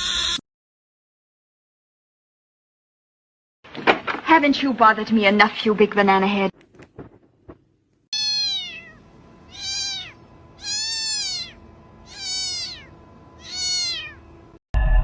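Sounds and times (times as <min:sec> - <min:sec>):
cat meowing: 0:08.2 - 0:14.3.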